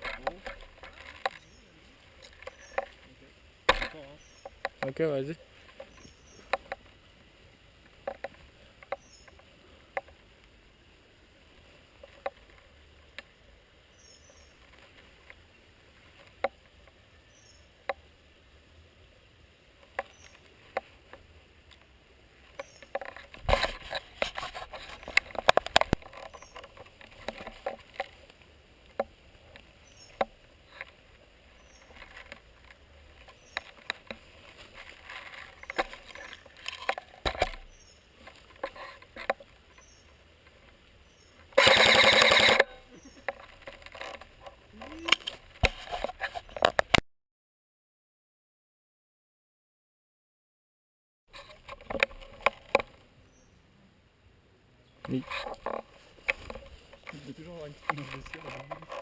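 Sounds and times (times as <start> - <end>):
rustling: 0.0 - 10.6, 19.8 - 47.0, 55.0 - 59.0.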